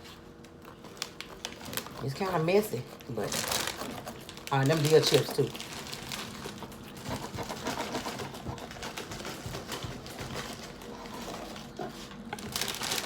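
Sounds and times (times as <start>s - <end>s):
chewing crunchy chips: 3.0s - 13.0s.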